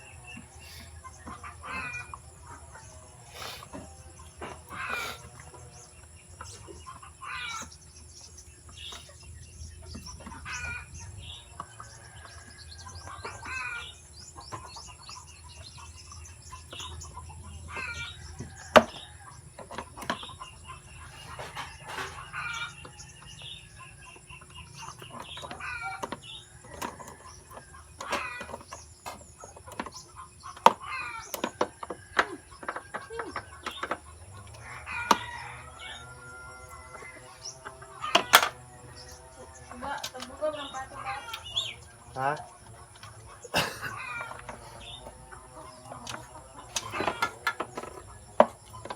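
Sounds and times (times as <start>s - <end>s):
short bird calls: 3.3s - 4.0s, 4.7s - 5.5s.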